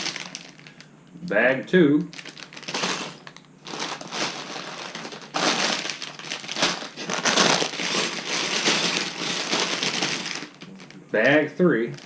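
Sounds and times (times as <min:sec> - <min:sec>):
plastic bags crinkling: 0:00.0 - 0:00.9, 0:02.1 - 0:11.1
plastic bricks rattling: 0:02.1 - 0:11.0.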